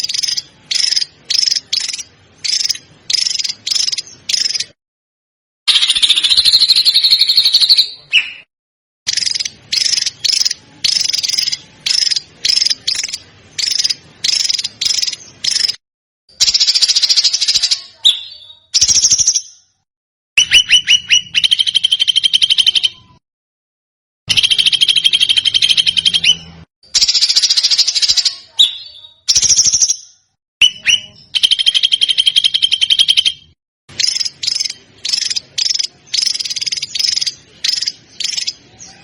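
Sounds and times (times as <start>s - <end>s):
songbird rapid trill: 0.0s - 4.8s, 9.1s - 19.6s, 24.3s - 38.6s.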